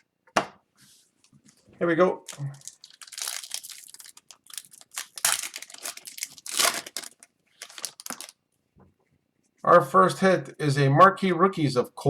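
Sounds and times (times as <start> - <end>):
plastic wrapping tearing and crinkling: 2.3 - 8.4.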